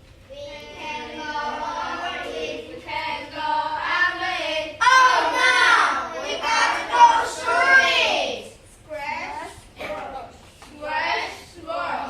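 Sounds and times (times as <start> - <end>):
children chanting: 0.3 - 8.5.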